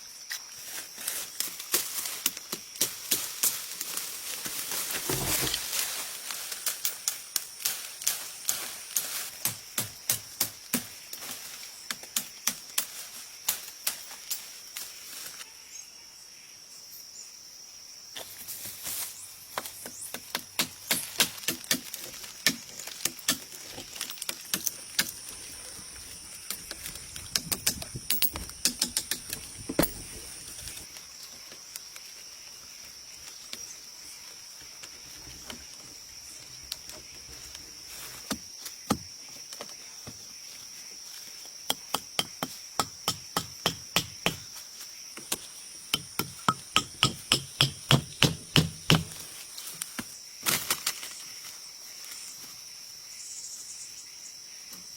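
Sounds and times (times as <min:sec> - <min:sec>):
high insect drone: 0:00.0 - 0:54.9
sharp clicks and knocks: 0:26.5 - 0:30.8, 0:45.2 - 0:49.2.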